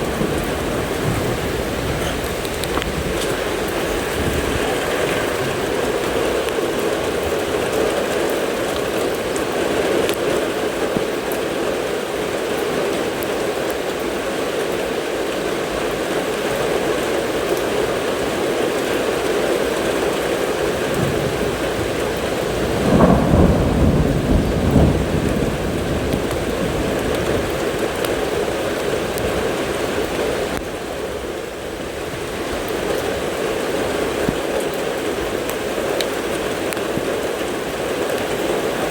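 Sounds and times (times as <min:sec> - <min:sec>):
thunder clap rumbling: 0:00.0 - 0:11.2, 0:19.6 - 0:30.6
steady rain falling: 0:00.0 - 0:38.9.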